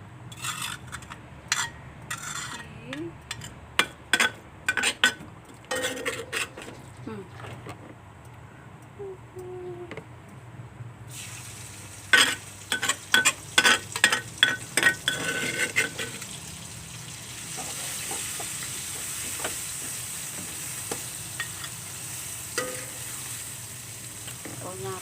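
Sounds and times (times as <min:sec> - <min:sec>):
spatula scraping pan: 0:00.3 - 0:02.6, 0:03.3 - 0:07.6, 0:12.1 - 0:16.3, 0:22.6 - 0:23.4
food frying in hot oil: 0:11.1 - 0:25.0.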